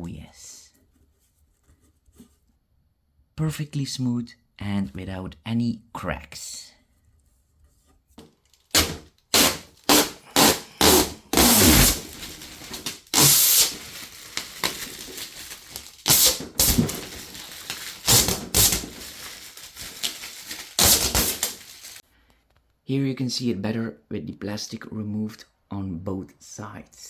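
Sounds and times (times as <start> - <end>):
plastic film peeling off: 8.4 - 22.0.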